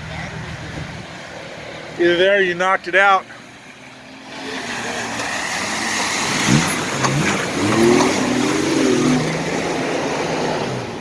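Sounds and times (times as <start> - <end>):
vehicle engine revving: 3.2 - 11.0.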